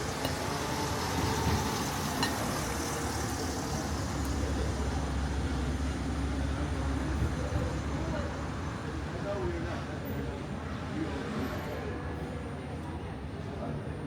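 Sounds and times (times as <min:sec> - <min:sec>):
street background noise: 0:00.0 - 0:14.0.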